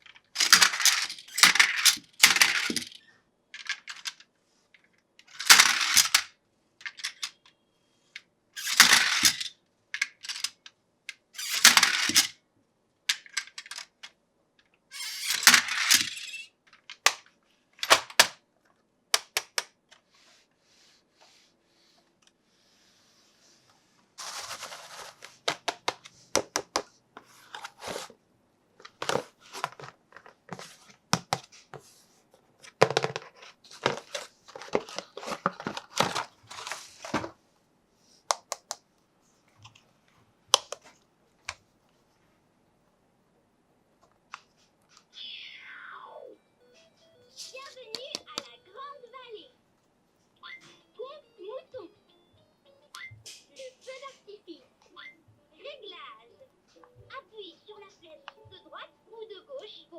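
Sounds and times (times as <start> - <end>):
plastic toy parts clicking: 0.0 - 3.0, 3.6 - 7.6, 8.6 - 12.4, 13.1 - 18.4
crinkling plastic packaging: 24.2 - 25.5.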